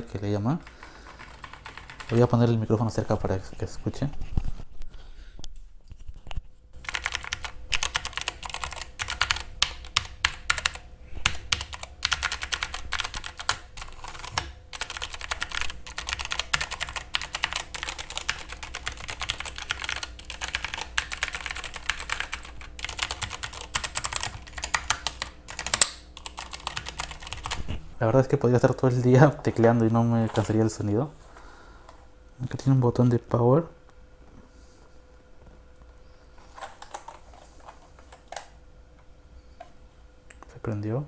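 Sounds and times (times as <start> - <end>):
mechanical keyboard typing: 0.6 - 2.4, 6.8 - 27.7, 36.8 - 37.2.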